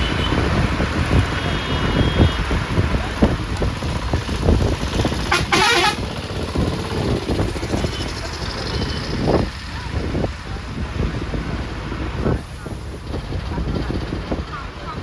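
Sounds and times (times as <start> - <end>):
bus engine and road rumble: 0.0 - 15.0.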